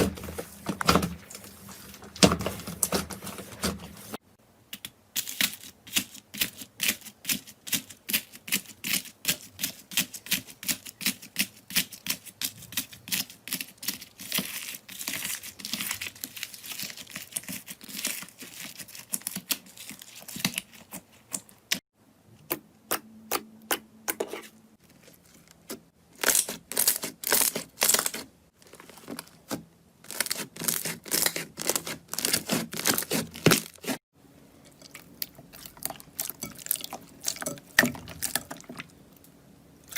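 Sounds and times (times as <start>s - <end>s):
slime squelching: 22.5s - 34.0s, 34.6s - 39.0s.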